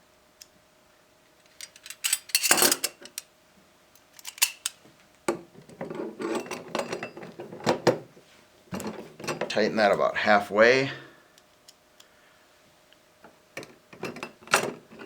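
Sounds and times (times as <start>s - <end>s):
metallic clinks of screws: 1.6s - 3.2s, 4.2s - 4.8s.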